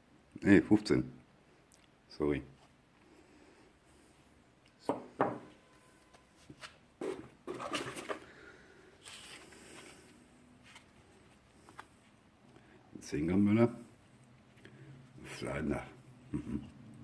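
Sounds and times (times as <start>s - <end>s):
rustling of wrapping: 5.9s - 12.6s.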